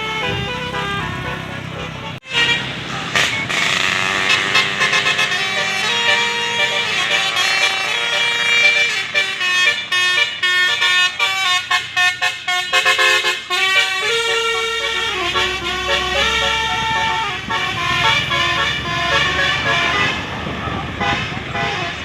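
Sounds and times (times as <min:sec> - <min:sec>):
bus horn playing a melody: 0:00.0 - 0:22.0.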